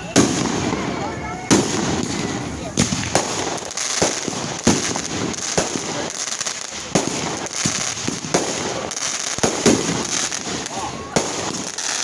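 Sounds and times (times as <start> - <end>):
fireworks bangs: 0.0 - 12.0
fireworks crackle: 0.0 - 12.0.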